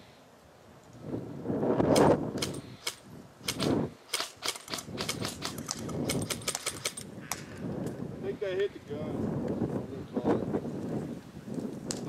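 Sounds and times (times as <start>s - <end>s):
airsoft guns firing: 2.0s - 7.4s.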